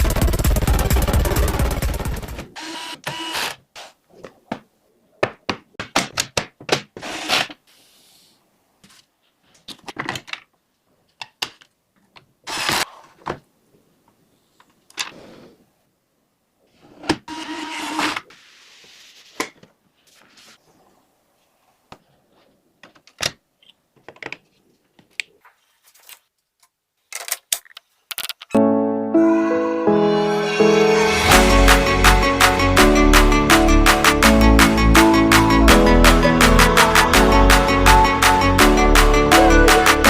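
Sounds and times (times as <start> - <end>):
background music: 28.6 - 40.0.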